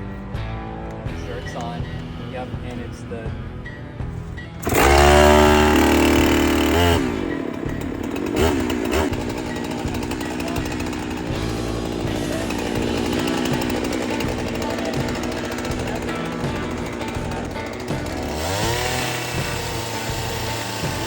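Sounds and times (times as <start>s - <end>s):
chainsaw starting and idling: 4.6s - 21.0s.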